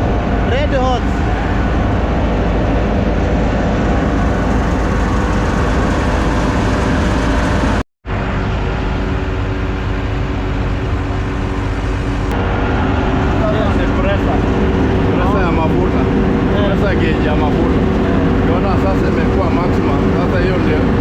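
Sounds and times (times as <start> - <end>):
grain dryer machine drone: 0.0 - 21.0.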